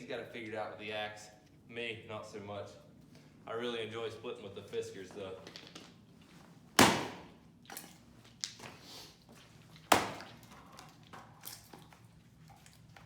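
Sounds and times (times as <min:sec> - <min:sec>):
axe chopping firewood: 0:06.8 - 0:07.4, 0:09.9 - 0:10.4.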